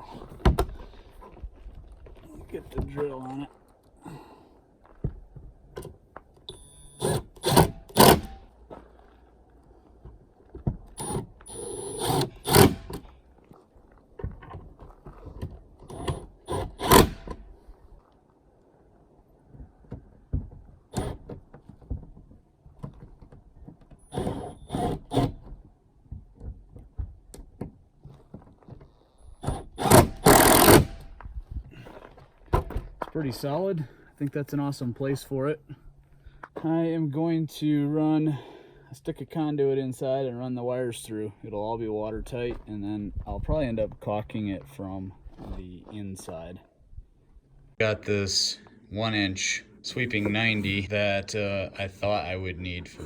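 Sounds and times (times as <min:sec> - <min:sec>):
cordless drill driving screws: 0:06.8 - 0:08.4, 0:11.0 - 0:13.0, 0:15.9 - 0:17.4, 0:21.0 - 0:21.3, 0:24.1 - 0:25.4, 0:29.4 - 0:31.1.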